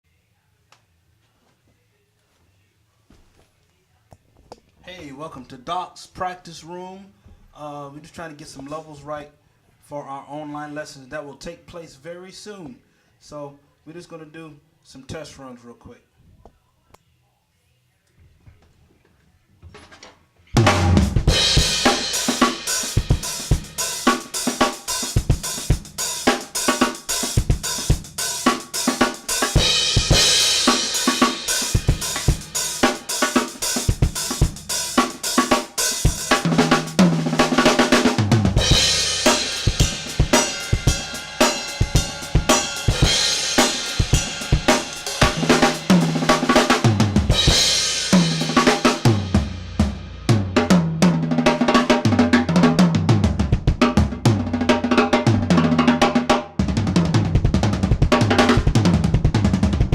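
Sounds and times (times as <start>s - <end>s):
drum kit playing: 20.6s - 59.9s.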